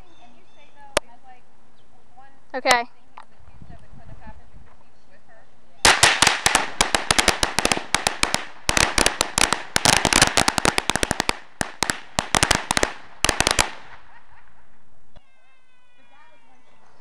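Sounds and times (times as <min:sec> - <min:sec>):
firecrackers banging: 0:05.8 - 0:14.8.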